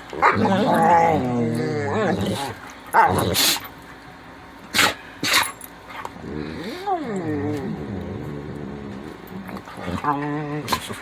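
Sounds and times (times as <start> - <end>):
dog sneezing: 4.7 - 5.6
dog grumbling vocalization: 6.2 - 11.0.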